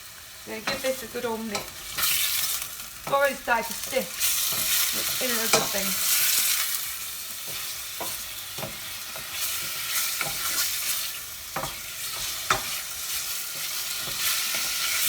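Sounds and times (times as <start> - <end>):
chicken sizzling in hot oil: 0.0 - 15.0.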